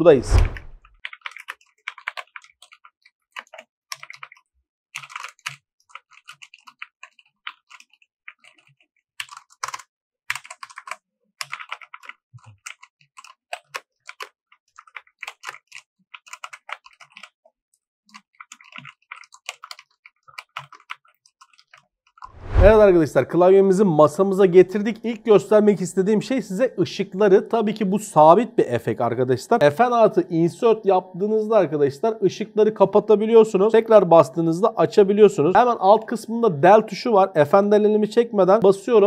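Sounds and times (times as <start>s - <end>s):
mechanical keyboard clacks: 1.0s - 2.8s, 3.4s - 4.4s, 5.0s - 17.3s, 18.2s - 21.8s.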